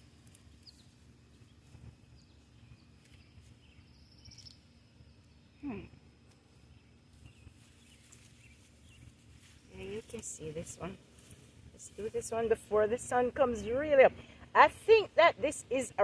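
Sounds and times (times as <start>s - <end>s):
faint bird chirps: 0.6s - 9.1s.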